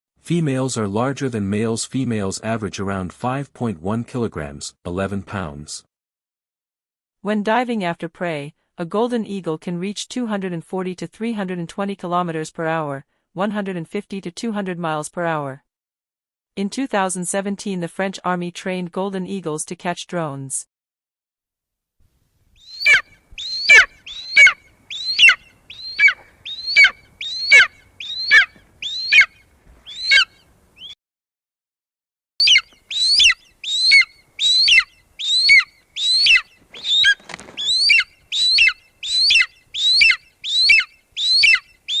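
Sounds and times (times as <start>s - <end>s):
eagle calling: 22.6s - 31.0s, 32.4s - 42.0s.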